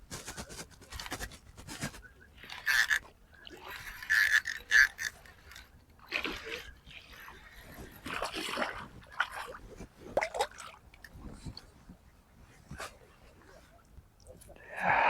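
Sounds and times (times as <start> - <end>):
fishing reel scraping whir: 3.8 - 5.7.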